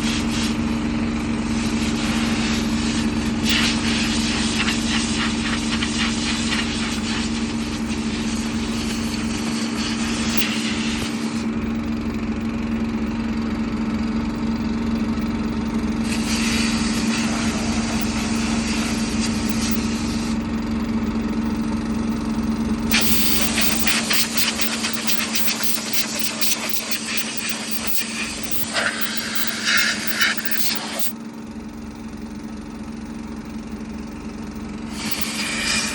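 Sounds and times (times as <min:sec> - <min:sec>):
low machine hum: 0:00.0 - 0:35.9
compressed air gun blasting: 0:01.8 - 0:11.5, 0:16.0 - 0:20.4, 0:22.9 - 0:31.1, 0:34.9 - 0:35.9.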